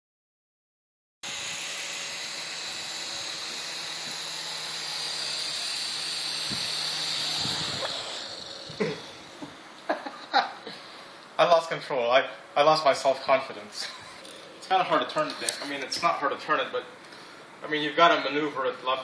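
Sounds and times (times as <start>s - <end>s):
toy helicopter whirring whine: 1.2s - 9.5s.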